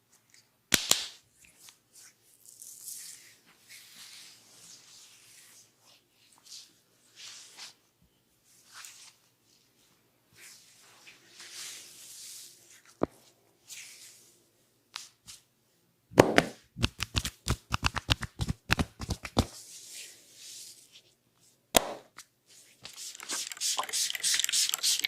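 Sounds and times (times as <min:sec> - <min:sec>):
hand slaps on head: 0:16.2 - 0:19.5, 0:21.8 - 0:22.1
hands rubbing oiled hair: 0:16.8 - 0:20.1, 0:22.8 - 0:25.0.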